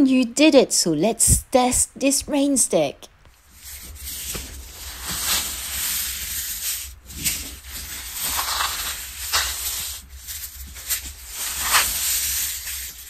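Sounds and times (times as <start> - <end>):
rain stick rice trickling: 3.5 - 13.0.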